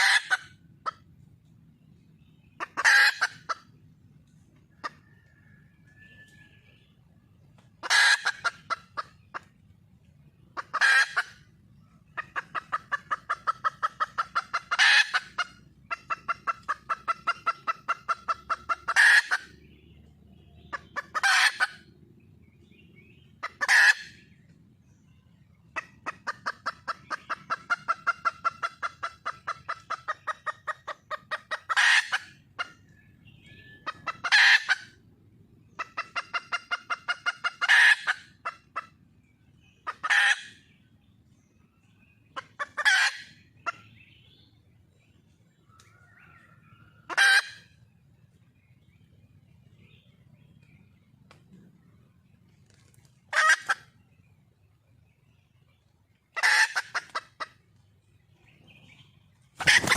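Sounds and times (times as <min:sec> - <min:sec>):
hen clucking: 0:00.0 - 0:48.2, 0:49.4 - 0:59.9
hen squawking: 0:02.6 - 0:03.6, 0:56.4 - 0:57.5.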